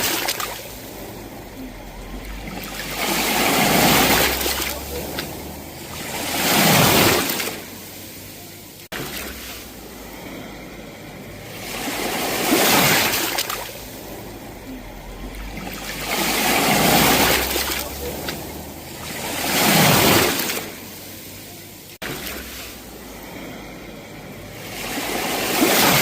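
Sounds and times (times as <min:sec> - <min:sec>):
sea waves breaking on shore: 0:00.0 - 0:26.0.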